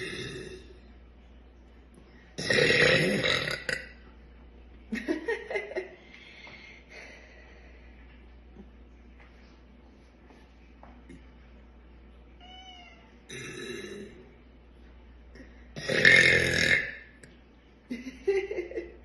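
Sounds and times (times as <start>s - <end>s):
woman burping: 0.0s - 0.7s, 2.4s - 4.0s, 13.3s - 14.2s, 15.8s - 17.1s.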